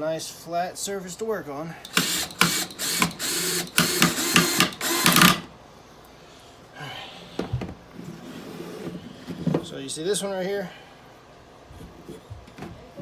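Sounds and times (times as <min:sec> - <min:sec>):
power drill into wood: 0:01.9 - 0:05.5.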